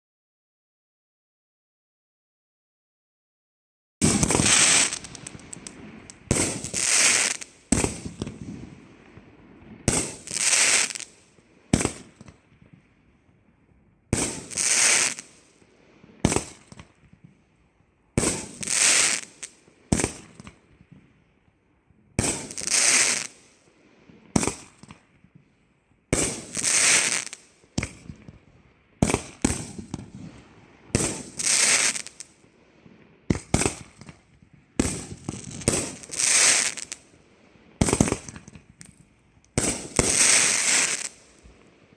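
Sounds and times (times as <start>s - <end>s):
firework volleys crackling: 4.0s - 8.4s, 31.0s - 32.3s, 39.6s - 41.4s
firework single pops: 4.0s - 12.9s, 14.1s - 15.4s, 16.2s - 17.4s, 18.2s - 21.1s, 22.2s - 23.4s, 24.3s - 25.5s, 26.1s - 28.4s, 29.0s - 32.3s, 32.9s - 37.0s, 37.8s - 41.7s.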